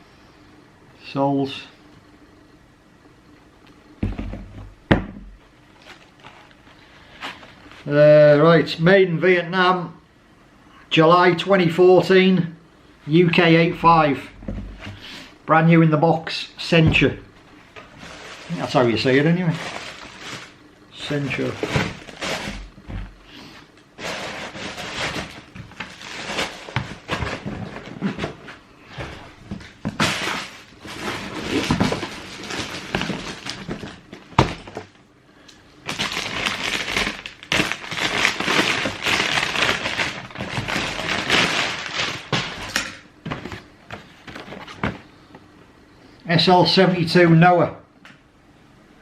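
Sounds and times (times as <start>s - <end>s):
cardboard and paper rustling: 5.7s - 7.9s, 17.7s - 23.2s, 24.0s - 35.0s, 35.9s - 45.1s.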